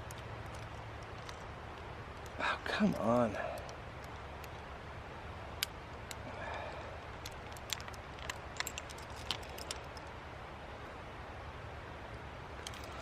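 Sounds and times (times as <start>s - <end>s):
camp gear clicking: 0.0s - 4.7s, 5.5s - 10.1s, 12.6s - 13.0s
low outdoor rumble: 0.0s - 13.0s.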